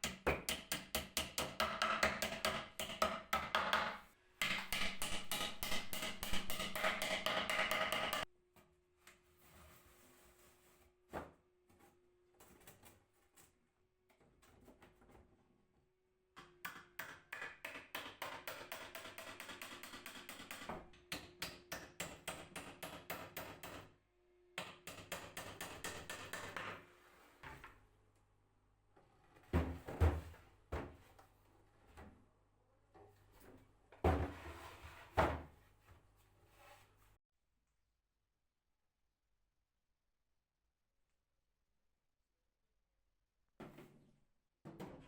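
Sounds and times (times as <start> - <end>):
wooden knocks: 1.6 - 8.2.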